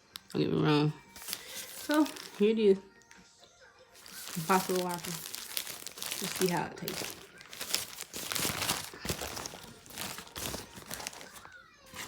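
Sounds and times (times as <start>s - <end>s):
paper wrapper crinkling: 1.1s - 2.5s, 4.0s - 12.0s.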